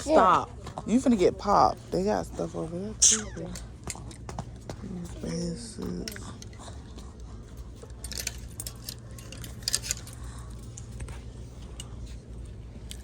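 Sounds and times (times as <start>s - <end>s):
low store hum: 0.0s - 13.0s
clothes hangers clinking on metal rack: 5.6s - 6.7s, 7.8s - 12.2s.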